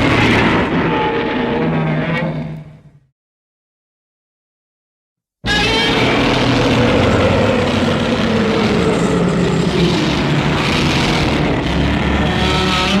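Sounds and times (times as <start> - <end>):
deep monster growl: 5.6 - 13.0.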